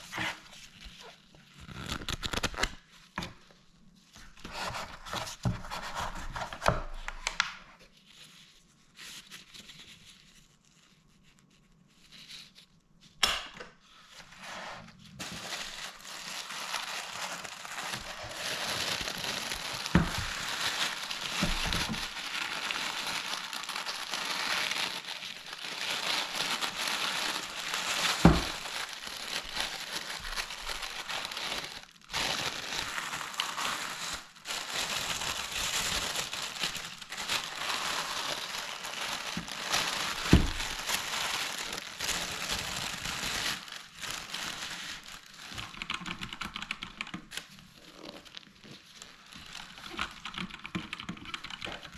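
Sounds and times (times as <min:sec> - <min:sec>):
packaging crinkling and crumpling: 0:00.0 - 0:13.0, 0:14.1 - 0:51.9
packaging knocks and rustles: 0:15.2 - 0:46.4.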